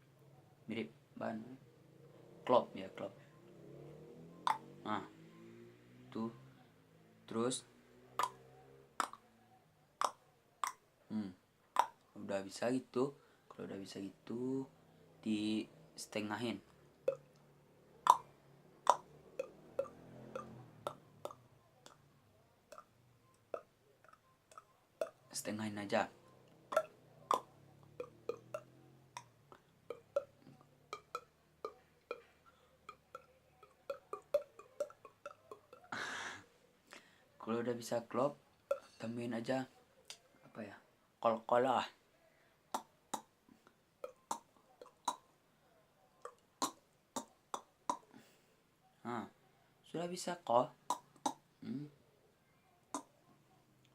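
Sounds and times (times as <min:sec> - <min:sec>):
tongue clicks: 0:04.4 - 0:04.7, 0:08.2 - 0:09.3, 0:10.0 - 0:10.8, 0:11.7 - 0:12.2, 0:17.0 - 0:22.1, 0:22.7 - 0:25.3, 0:26.5 - 0:36.2, 0:38.6 - 0:39.0, 0:42.7 - 0:45.4, 0:46.2 - 0:48.3, 0:50.8 - 0:51.8, 0:52.8 - 0:53.2.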